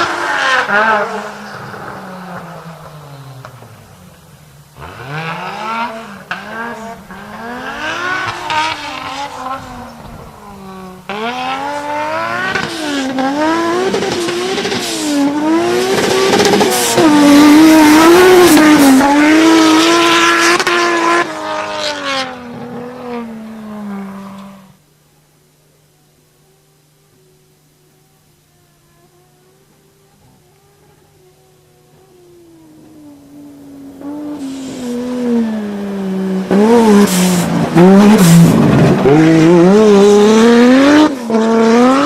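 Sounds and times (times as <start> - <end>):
car engine revving: 0.0 - 25.0, 25.6 - 42.0.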